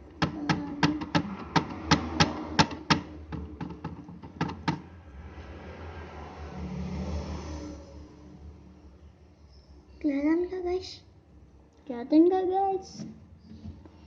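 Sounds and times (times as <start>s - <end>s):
sharp taps on hard surface: 0.0s - 4.9s.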